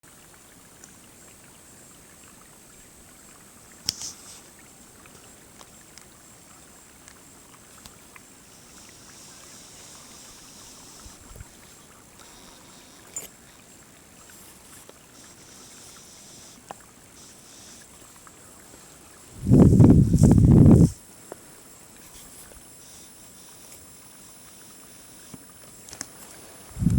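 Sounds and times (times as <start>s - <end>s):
faint steady hiss: 0.1s - 26.9s
small clicks: 12.2s - 13.4s, 25.2s - 26.9s.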